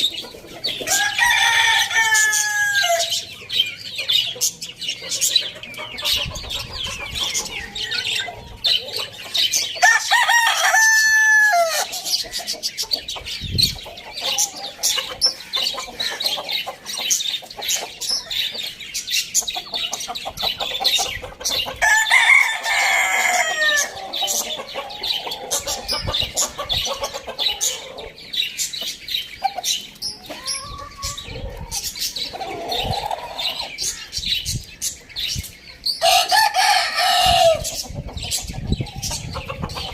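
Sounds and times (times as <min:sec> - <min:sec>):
birds chirping and clucking: 0:00.0 - 0:39.9
rooster crowing: 0:00.9 - 0:03.2, 0:09.8 - 0:11.9, 0:21.8 - 0:24.1, 0:36.0 - 0:37.6.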